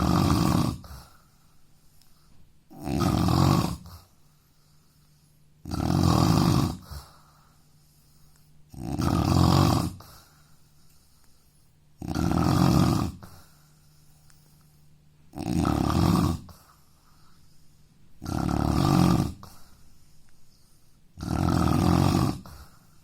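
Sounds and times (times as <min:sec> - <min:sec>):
man snoring loudly: 0:00.0 - 0:01.1, 0:02.7 - 0:04.0, 0:05.6 - 0:07.0, 0:08.7 - 0:10.1, 0:12.0 - 0:13.3, 0:15.3 - 0:16.6, 0:18.2 - 0:19.6, 0:21.2 - 0:22.7.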